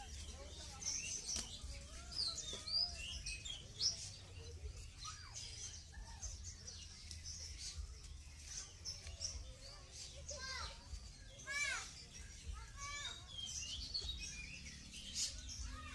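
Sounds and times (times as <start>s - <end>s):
small birds chirping and twittering: 0.0s - 15.9s.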